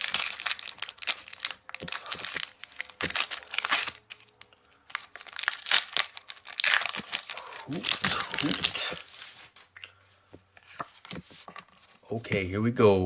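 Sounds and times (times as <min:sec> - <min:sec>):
foil wrapper crinkling and tearing: 0:00.0 - 0:09.7.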